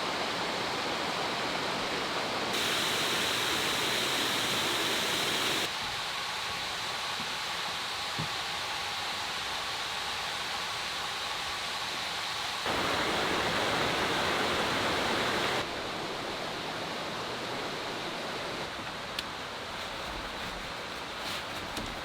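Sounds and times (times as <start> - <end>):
rushing outdoor ambience: 12.2 - 19.6.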